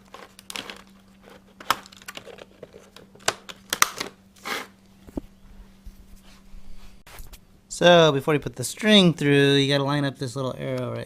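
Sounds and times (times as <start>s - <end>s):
crinkly rustles: 0.0s - 3.3s
faint steady hum: 0.0s - 11.0s.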